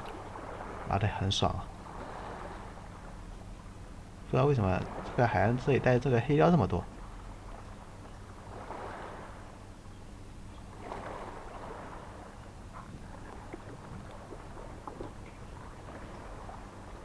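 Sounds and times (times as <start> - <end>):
sea waves washing on shore: 0.0 - 9.8, 10.7 - 17.0.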